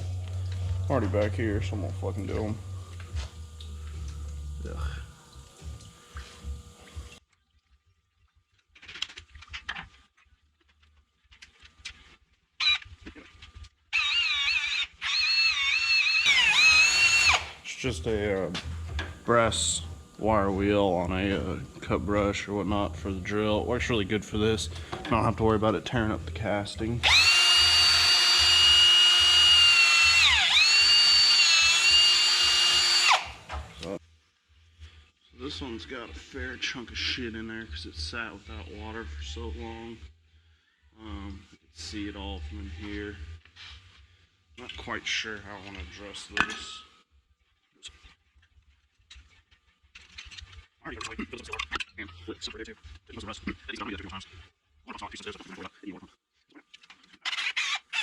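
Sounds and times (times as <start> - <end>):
electric drill with wire brush whining: 12.6 - 12.8, 13.9 - 17.7, 27.0 - 34.0, 57.3 - 58.0.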